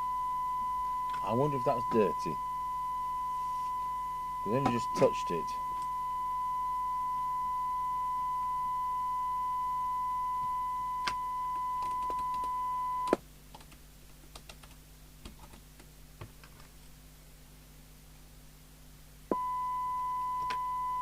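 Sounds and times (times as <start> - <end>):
radio test tone: 0.0 - 13.2.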